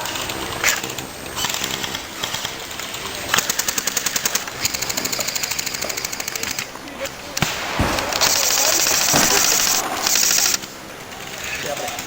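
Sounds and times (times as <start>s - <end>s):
airsoft guns firing full auto: 7.4s - 12.0s.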